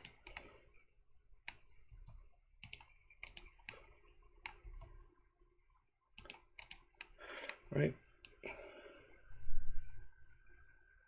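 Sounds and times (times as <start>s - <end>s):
computer mouse and keyboard clicking: 0.0s - 0.6s, 1.4s - 5.0s, 6.2s - 7.6s.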